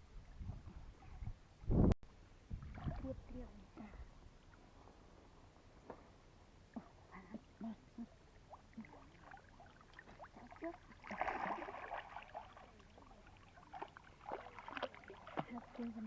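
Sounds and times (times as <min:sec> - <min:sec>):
water sloshing and splashing: 0:02.5 - 0:04.7, 0:08.3 - 0:16.0
swishing splash: 0:11.0 - 0:12.8, 0:13.6 - 0:15.8.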